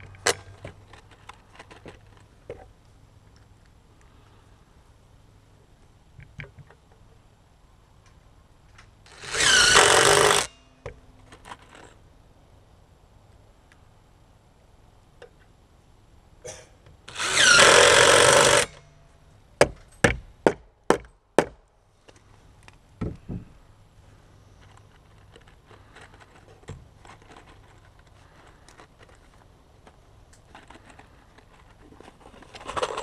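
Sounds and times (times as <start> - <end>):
power saw cutting: 9.1 - 10.6, 17.1 - 18.8.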